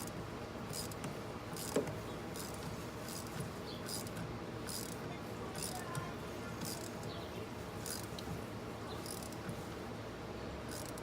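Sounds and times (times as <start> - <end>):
socket wrench ratchet clicking: 0.0 - 5.0, 7.8 - 8.2, 9.0 - 9.5, 10.7 - 11.0.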